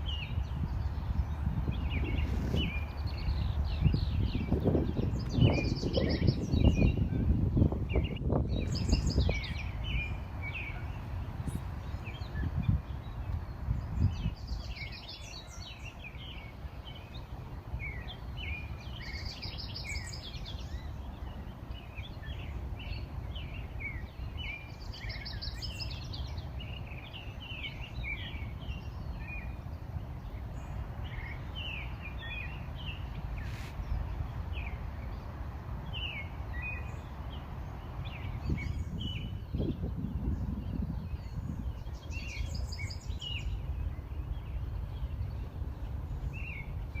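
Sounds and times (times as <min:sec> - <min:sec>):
songbirds chirping: 0:00.0 - 0:47.0.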